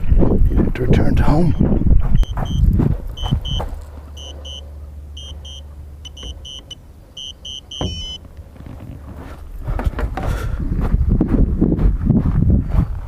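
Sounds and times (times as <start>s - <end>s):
low steady hum: 0.0s - 13.0s
electronic warning beeps: 0.3s - 8.2s.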